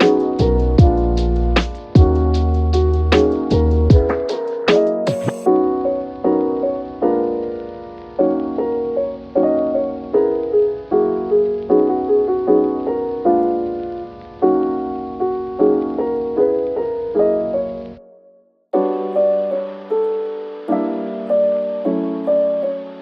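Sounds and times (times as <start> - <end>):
keyboard chords: 0.0 - 23.0.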